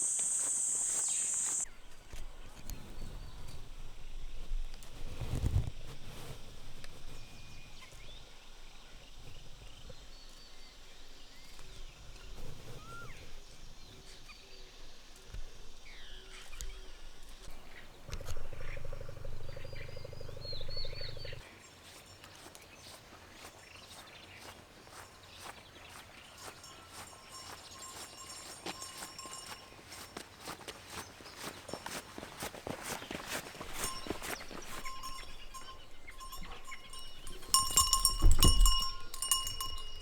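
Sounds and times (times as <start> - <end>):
footsteps on dirt path: 0.0 - 3.4, 15.2 - 40.0
small birds chirping: 0.0 - 40.0.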